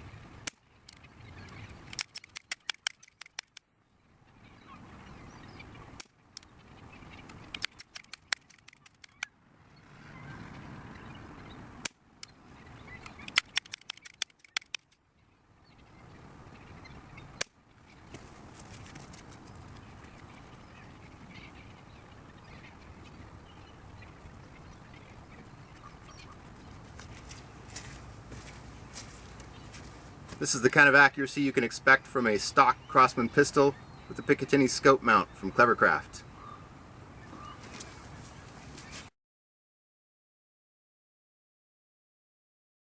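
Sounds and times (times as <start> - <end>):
outdoor background noise: 0.0 - 39.1.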